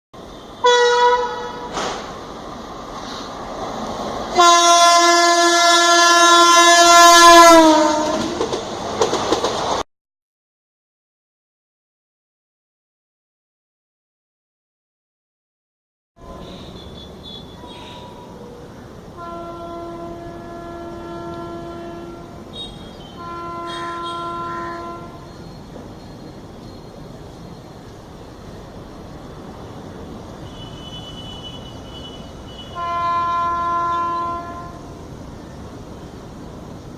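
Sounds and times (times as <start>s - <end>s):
oncoming train noise: 0.2s - 9.8s, 16.2s - 36.9s
locomotive horn blast: 0.4s - 2.1s, 4.3s - 8.4s, 16.2s - 18.4s, 19.1s - 25.4s, 30.4s - 35.0s.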